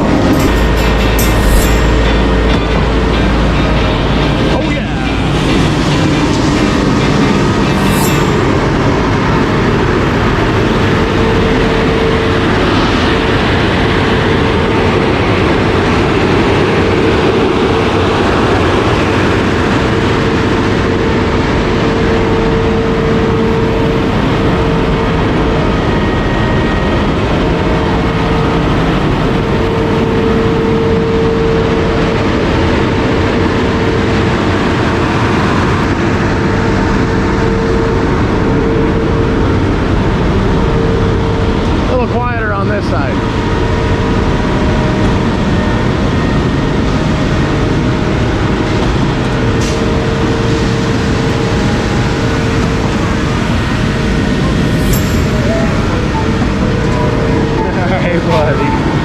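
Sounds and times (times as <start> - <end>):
diesel engine drone: 0.0 - 59.0.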